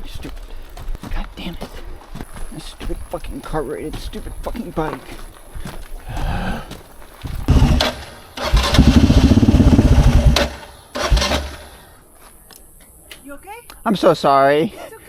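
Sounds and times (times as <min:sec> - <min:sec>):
motorcycle engine cranking: 0:07.3 - 0:11.8.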